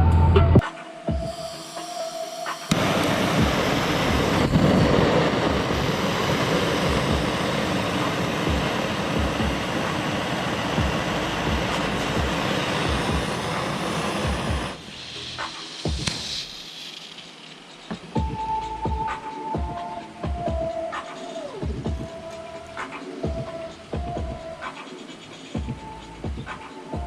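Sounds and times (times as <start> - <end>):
heavy machinery rumbling: 2.7 - 15.4.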